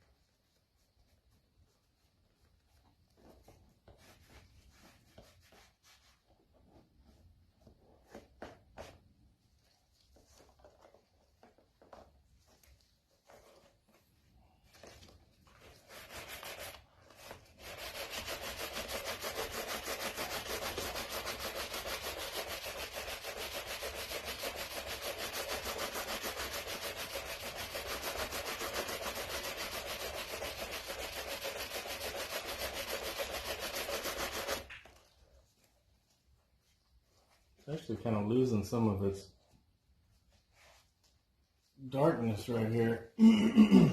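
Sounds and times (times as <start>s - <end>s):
hand rubbing leather: 0.0s - 38.0s.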